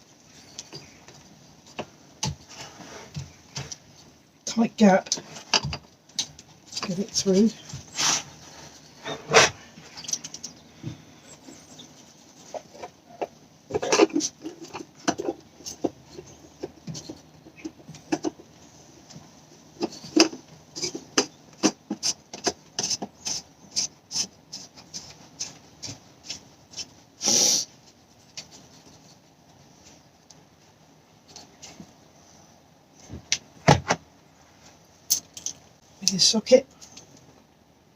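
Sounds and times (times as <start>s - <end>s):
short rasp: 27.2s - 27.7s.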